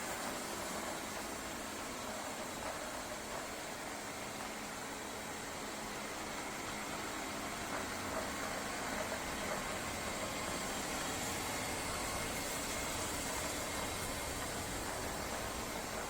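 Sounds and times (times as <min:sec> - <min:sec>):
robot vacuum suction fan hissing: 0:03.8 - 0:16.0.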